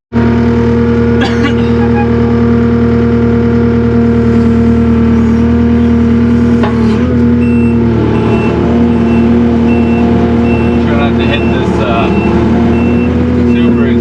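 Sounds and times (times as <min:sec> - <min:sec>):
diesel engine running: 0:00.1 - 0:14.0
reversing alarm beeping: 0:07.4 - 0:14.0.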